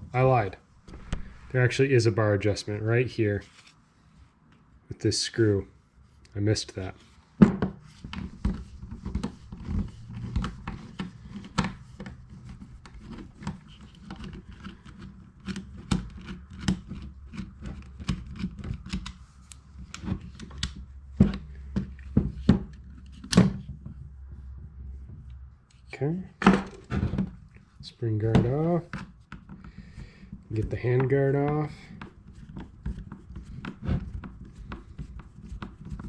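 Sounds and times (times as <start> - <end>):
sharp knocks: 0.9 - 1.5.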